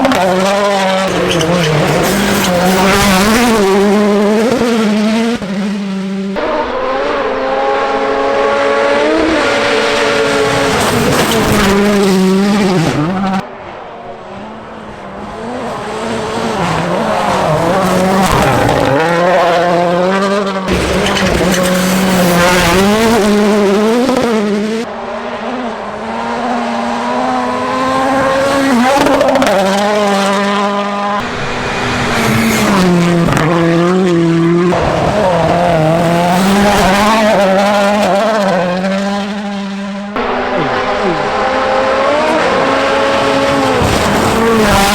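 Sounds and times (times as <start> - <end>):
rally car engines revving: 0.0 - 44.9.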